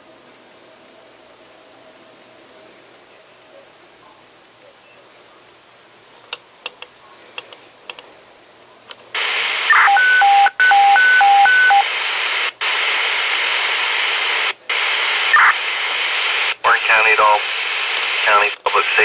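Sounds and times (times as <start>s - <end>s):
radio squelch hiss: 2.4s - 8.3s, 9.0s - 19.0s
sharp clicks: 17.9s - 18.8s.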